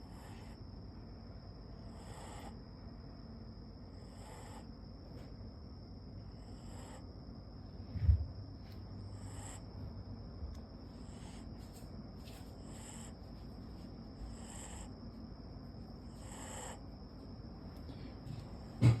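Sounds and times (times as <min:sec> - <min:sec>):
puppy snoring softly: 0:00.0 - 0:00.6, 0:01.7 - 0:02.6, 0:03.9 - 0:04.7, 0:06.3 - 0:07.1, 0:09.1 - 0:09.8, 0:14.2 - 0:15.0, 0:16.0 - 0:16.9.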